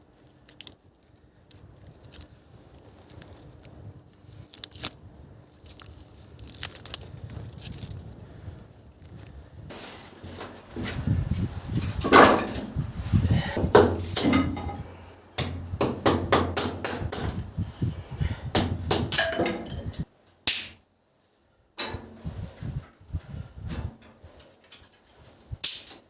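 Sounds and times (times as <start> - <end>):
hard knocks and strikes: 13.6 - 17.4, 18.6 - 19.8.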